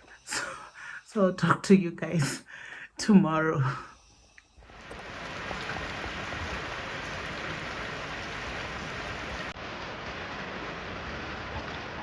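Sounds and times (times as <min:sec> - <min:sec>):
steady rain falling: 0:04.6 - 0:12.0.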